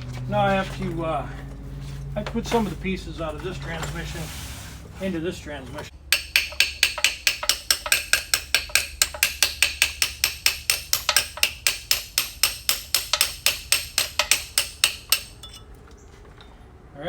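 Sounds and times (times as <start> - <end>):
rapid hammer taps on metal: 6.1 - 15.6.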